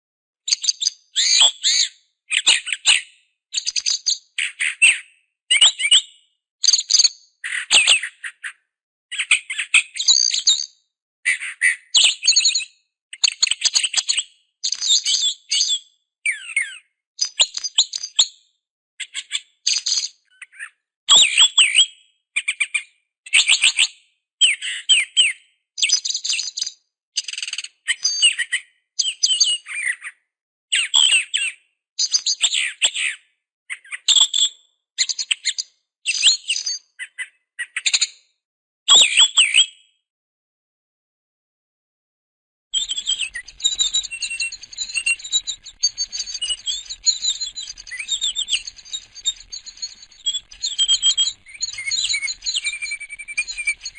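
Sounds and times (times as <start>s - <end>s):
bird chirping and twittering: 42.8s - 53.9s.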